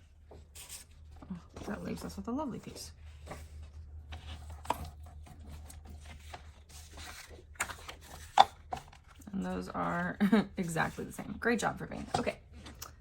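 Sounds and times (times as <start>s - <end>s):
low steady hum: 0.0s - 13.0s
paper rustling: 0.3s - 10.0s.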